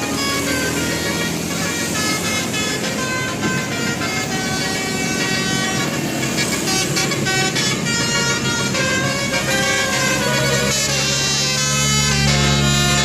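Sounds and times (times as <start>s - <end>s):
bus musical horn tune: 0.0s - 13.0s.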